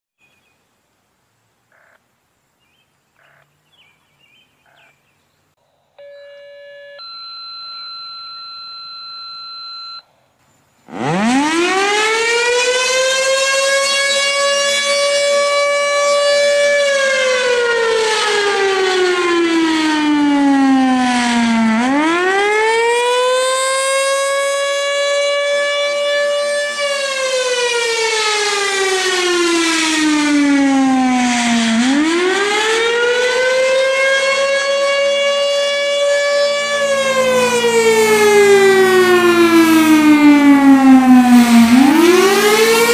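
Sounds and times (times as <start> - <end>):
civil defense siren wailing: 10.9 - 42.9.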